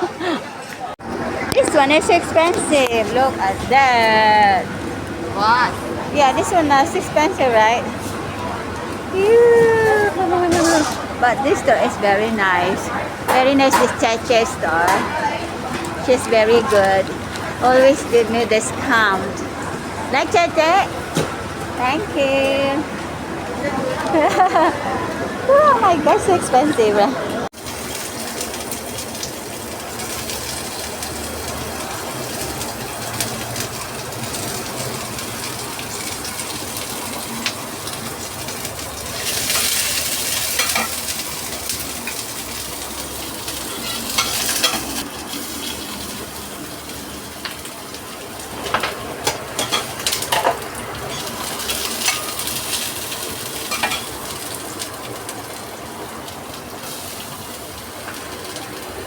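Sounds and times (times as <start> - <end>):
utensils clinking on cookware: 9.9 - 19.5, 39.1 - 45.0, 48.6 - 54.4
food sizzling in a pan: 27.6 - 59.0.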